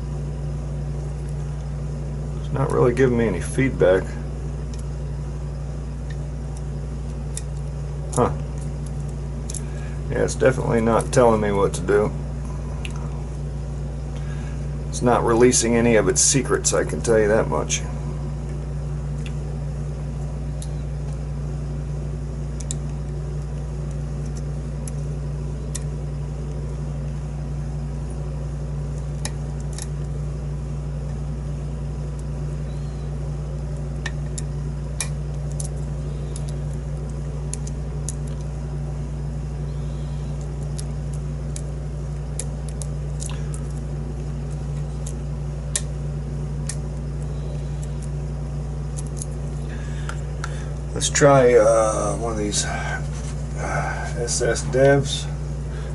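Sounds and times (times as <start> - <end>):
steady low hum: 0.0 - 55.9.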